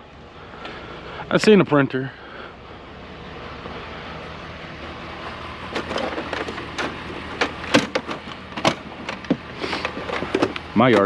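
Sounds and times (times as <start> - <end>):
vehicle engine idling: 0.0 - 11.0
sharp clicks and knocks: 5.7 - 11.0.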